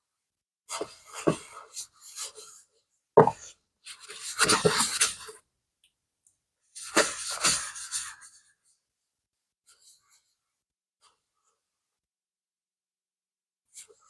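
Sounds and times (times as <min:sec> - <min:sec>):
knock: 0:03.2 - 0:03.4.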